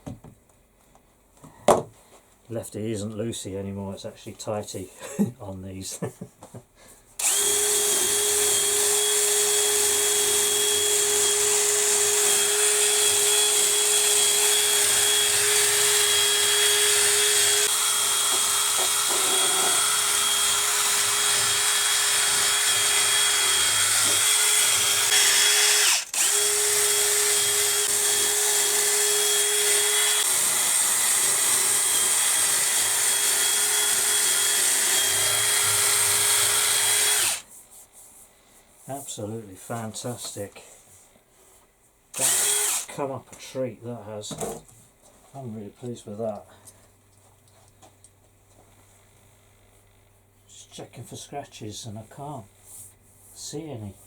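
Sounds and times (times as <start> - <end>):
power tool whining: 7.2 - 37.4, 42.2 - 43.0.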